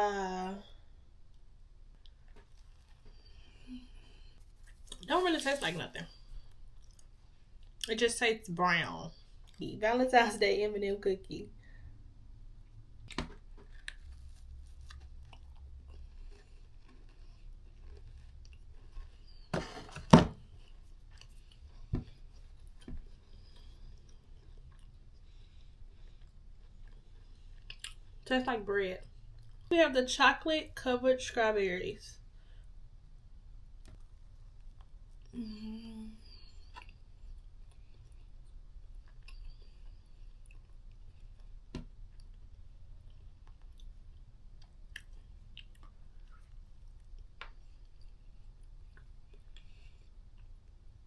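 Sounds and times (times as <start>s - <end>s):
biting and chewing cookie: 12.5s - 19.6s, 20.4s - 28.3s, 36.3s - 51.0s.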